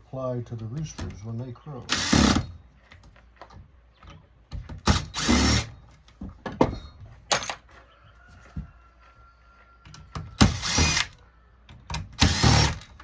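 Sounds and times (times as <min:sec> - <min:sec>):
power drill bursts: 0:01.9 - 0:02.5, 0:04.8 - 0:05.7, 0:10.4 - 0:11.2, 0:12.2 - 0:12.9.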